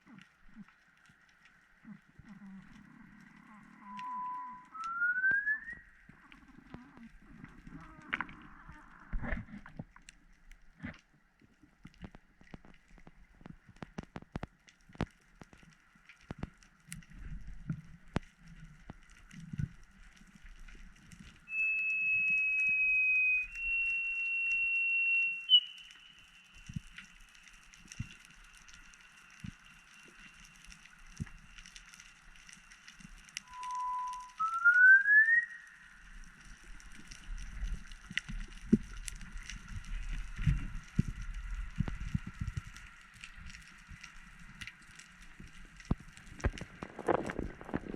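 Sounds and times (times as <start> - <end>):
clicks and crackle: 0.0 - 47.9
high-pitched underwater whistle: 3.7 - 6.0, 21.4 - 26.9, 33.4 - 36.4.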